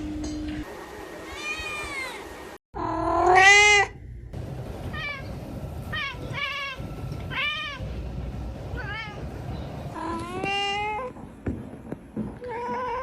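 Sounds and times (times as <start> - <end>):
cats meowing: 4.8 - 7.9, 10.0 - 11.1.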